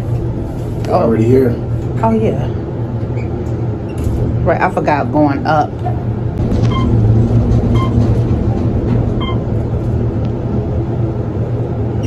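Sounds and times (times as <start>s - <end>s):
elevator low rumble: 0.0s - 12.0s.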